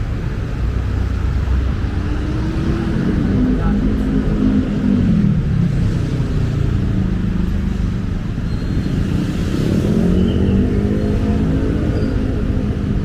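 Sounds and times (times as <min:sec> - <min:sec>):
motorcycle engines: 0:00.0 - 0:13.0
street traffic: 0:00.0 - 0:13.0
vehicle pulling away: 0:00.7 - 0:13.0.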